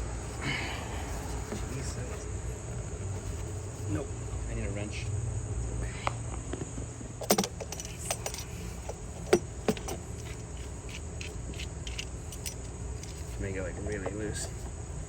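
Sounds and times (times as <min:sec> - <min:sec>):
metal hand tools clinking: 0:07.2 - 0:13.4.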